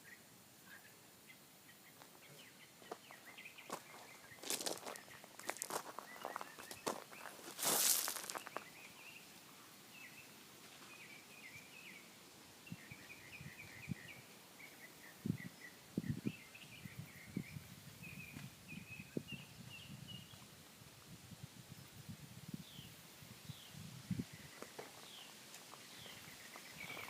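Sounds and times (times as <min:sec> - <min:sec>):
faint birds chirping: 0:00.0 - 0:27.0
rustling: 0:03.7 - 0:08.6.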